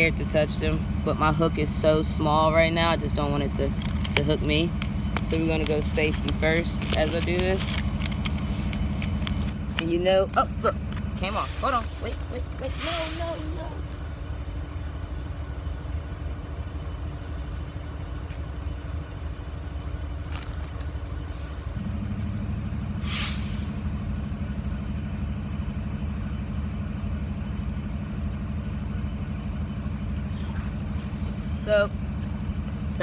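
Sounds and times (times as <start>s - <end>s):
vehicle engine rumble: 0.0s - 33.0s
short hiss: 12.8s - 13.4s, 23.0s - 23.8s.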